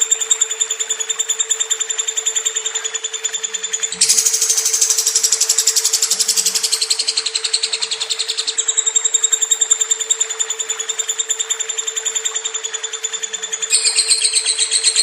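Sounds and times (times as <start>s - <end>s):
steady low hum: 3.8s - 8.6s
bird chattering trill: 3.9s - 8.9s, 13.7s - 15.0s.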